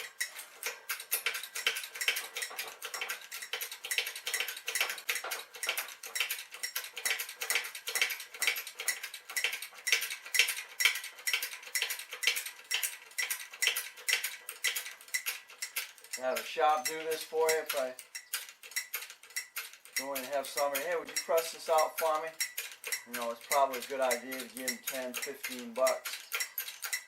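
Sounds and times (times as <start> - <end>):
rapid metallic clicking: 0.0 - 27.0.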